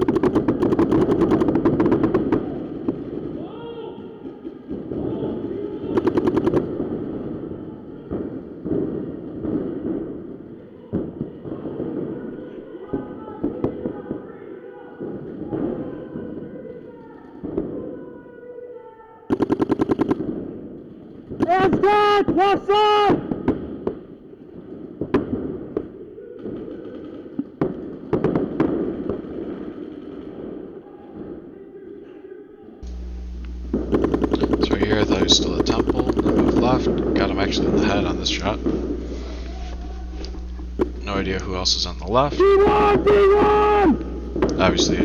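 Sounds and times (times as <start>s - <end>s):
paintball marker firing: 0.0s - 1.8s, 19.3s - 20.2s, 32.8s - 41.2s
low rumbling noise: 32.8s - 45.0s.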